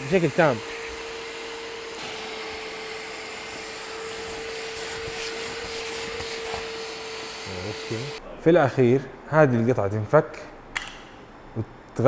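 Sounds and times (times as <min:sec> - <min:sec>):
spot cleaner suction motor whine: 0:00.0 - 0:08.2.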